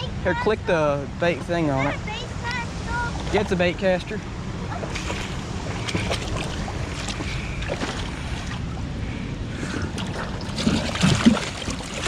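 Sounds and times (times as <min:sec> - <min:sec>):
small knocks and splashes: 0:04.8 - 0:08.7, 0:09.9 - 0:12.0.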